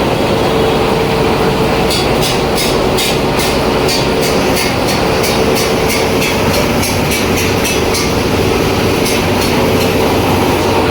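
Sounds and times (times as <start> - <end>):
machine hum: 0.0 - 10.9
regular machine clatter: 1.9 - 10.2.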